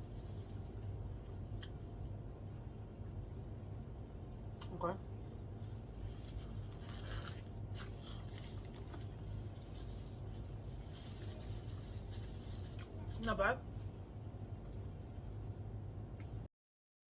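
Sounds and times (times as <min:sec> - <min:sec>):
steady low hum: 0:00.0 - 0:16.5
soft eating clicks and crackles: 0:00.1 - 0:02.0, 0:04.5 - 0:13.2.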